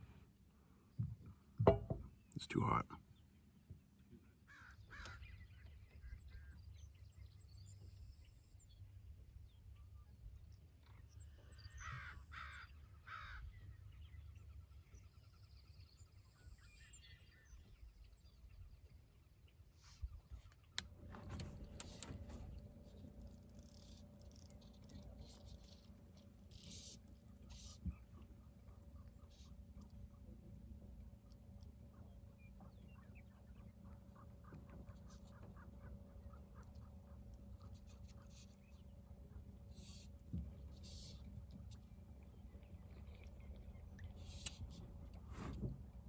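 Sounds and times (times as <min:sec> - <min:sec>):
clicks and knocks: 0:01.6 - 0:02.1.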